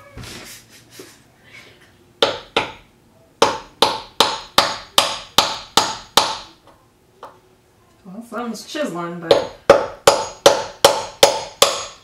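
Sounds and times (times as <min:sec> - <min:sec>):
hammer striking wood chisel: 0:02.2 - 0:02.8, 0:03.4 - 0:06.5, 0:09.3 - 0:12.0.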